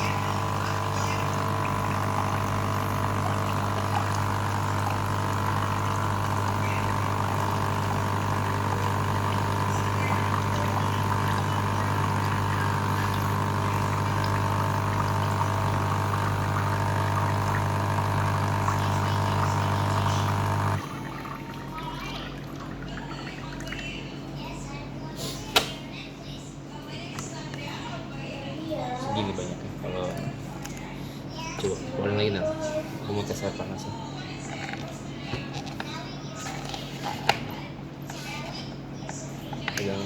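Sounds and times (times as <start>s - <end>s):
water flowing: 0.0s - 23.8s
electric water pump humming: 0.0s - 24.8s, 28.8s - 40.0s.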